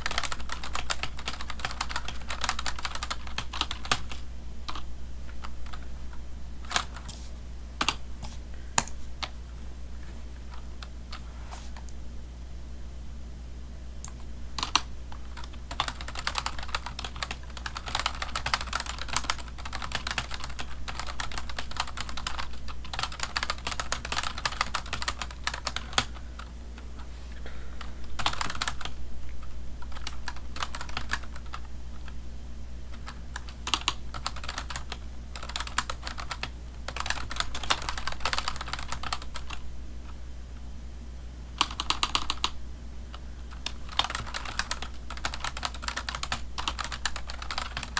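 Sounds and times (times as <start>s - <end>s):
computer keyboard typing: 0.0s - 5.9s, 6.6s - 7.2s, 7.8s - 9.4s, 14.0s - 27.0s, 28.1s - 32.2s, 32.9s - 39.6s, 41.6s - 47.9s
steady low hum: 0.0s - 47.9s.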